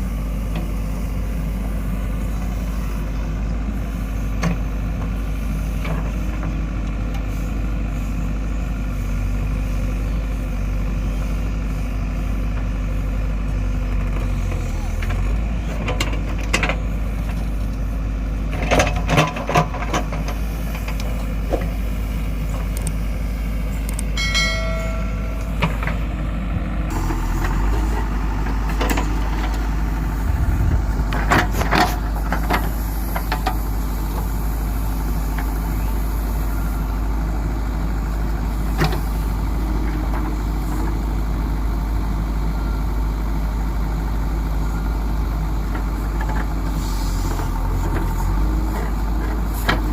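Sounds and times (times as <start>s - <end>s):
diesel engine running: 0.0s - 49.9s
high-pitched tone: 24.2s - 26.2s.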